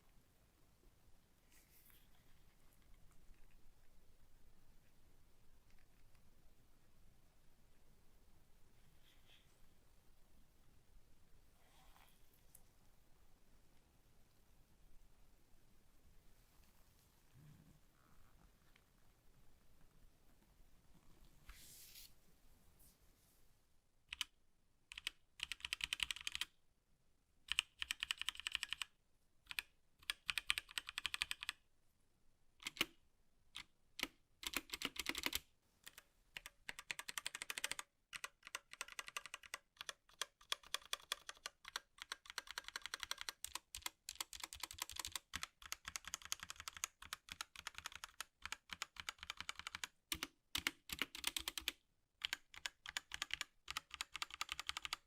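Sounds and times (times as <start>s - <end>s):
mechanical keyboard typing: 24.1s - 24.3s, 24.9s - 26.5s, 27.5s - 28.9s, 29.5s - 31.6s, 32.6s - 32.9s, 33.6s - 55.0s.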